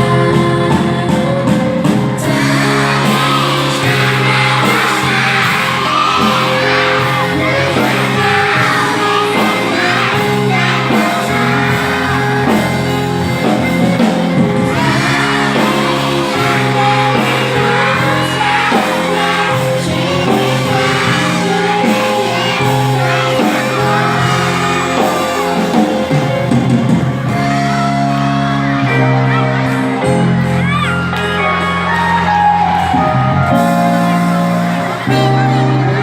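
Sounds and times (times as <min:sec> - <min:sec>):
person singing: 0:00.0 - 0:27.5
held instrumental chords: 0:00.0 - 0:36.0
shouts: 0:02.7 - 0:12.7, 0:27.7 - 0:33.0.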